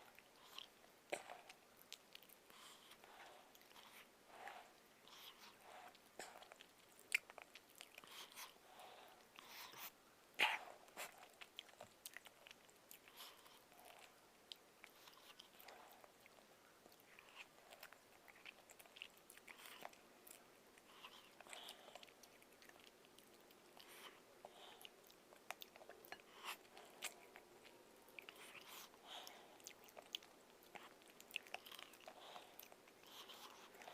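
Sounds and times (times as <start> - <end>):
person chewing and lip-smacking: 9.8 - 33.9.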